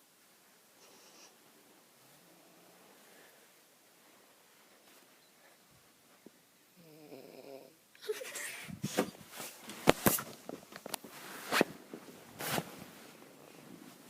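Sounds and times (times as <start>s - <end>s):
person snoring: 6.8s - 7.8s.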